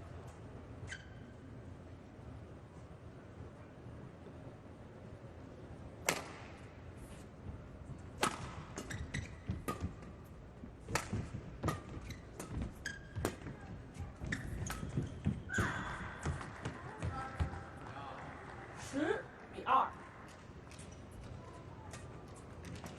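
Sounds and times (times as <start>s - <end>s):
shoes squeaking on court floor: 0.8s - 1.5s, 8.3s - 18.0s
racket hitting shuttlecock: 6.0s - 6.7s, 8.2s - 10.2s, 10.8s - 13.6s, 14.2s - 17.6s.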